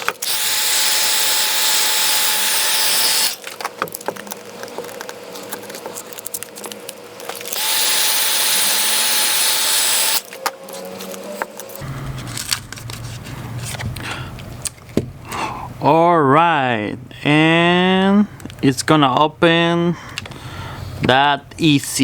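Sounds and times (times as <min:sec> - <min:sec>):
heat gun blowing hot air: 0:00.0 - 0:03.4, 0:07.5 - 0:10.2
scraping: 0:10.2 - 0:15.0.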